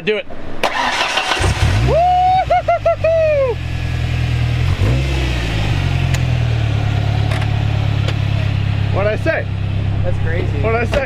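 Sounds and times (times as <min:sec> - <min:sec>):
truck engine idling: 0:00.8 - 0:11.0
person cheering whoop: 0:01.8 - 0:03.6.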